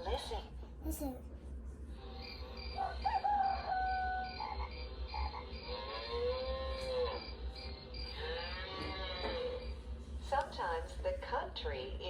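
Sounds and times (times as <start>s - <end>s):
frogs croaking: 2.2s - 9.6s.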